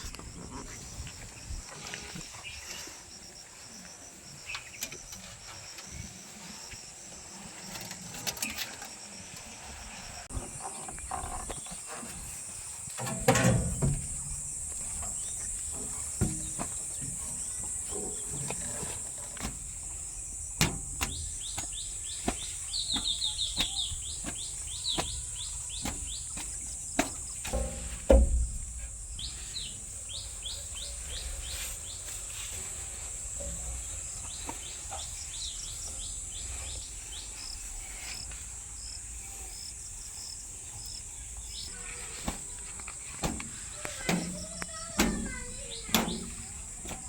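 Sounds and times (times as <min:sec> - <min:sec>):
bird chirping: 0:19.9 - 0:27.7, 0:28.6 - 0:32.2.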